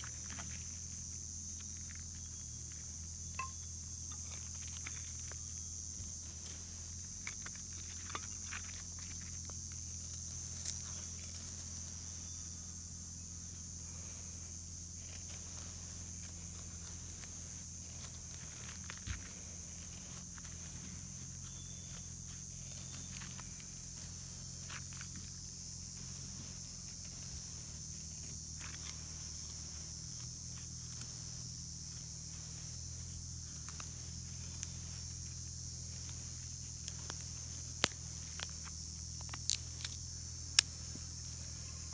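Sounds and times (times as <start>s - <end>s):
handling clicks and knocks: 3.4s - 4.3s.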